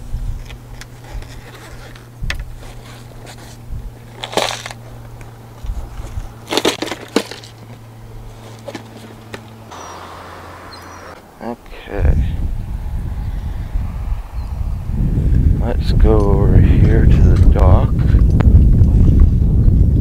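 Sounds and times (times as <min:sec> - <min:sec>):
steady low hum: 0:00.0 - 0:20.0
fishing tackle knocking and rustling: 0:00.5 - 0:09.6.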